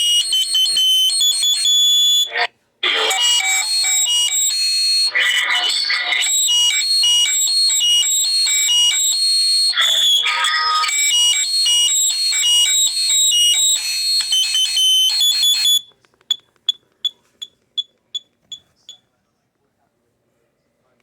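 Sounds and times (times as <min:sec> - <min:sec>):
amplifier feedback squealing: 0:02.9 - 0:15.8.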